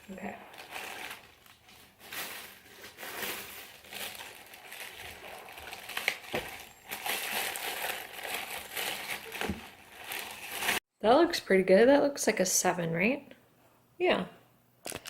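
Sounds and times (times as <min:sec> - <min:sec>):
rustling and crinkling: 0:00.0 - 0:10.8.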